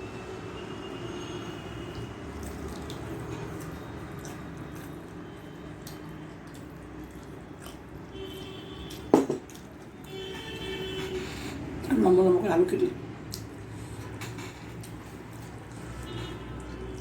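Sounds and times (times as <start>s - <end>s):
wet chewing and mouth clicks: 2.3s - 8.1s, 8.9s - 10.2s, 13.2s - 17.0s.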